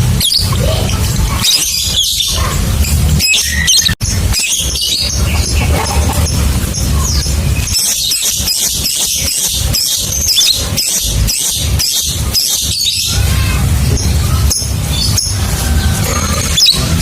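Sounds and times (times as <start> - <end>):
bird squeaky chattering: 0.0 - 13.2.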